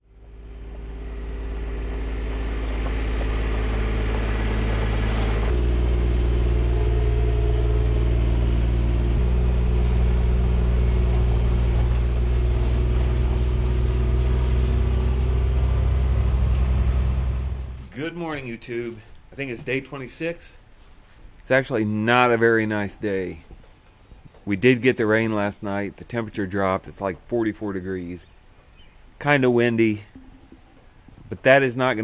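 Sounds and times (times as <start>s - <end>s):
vehicle engine running: 0.0s - 18.7s.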